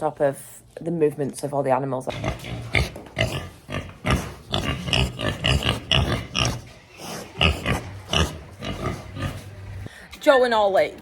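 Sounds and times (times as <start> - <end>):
pigs grunting and squealing: 2.1 - 9.9.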